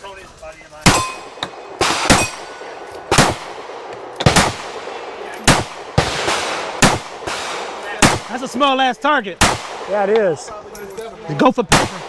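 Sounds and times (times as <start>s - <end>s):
pistol shots: 0.8s - 8.6s, 9.4s - 10.4s, 11.7s - 12.0s.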